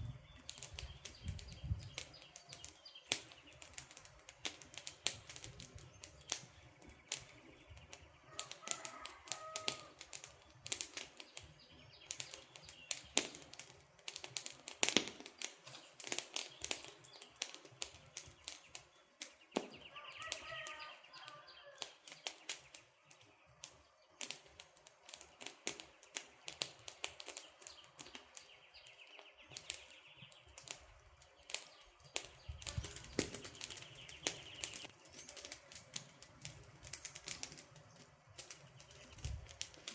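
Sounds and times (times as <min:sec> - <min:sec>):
campfire crackling and popping: 0:00.0 - 0:39.9
bird calling: 0:19.7 - 0:21.8.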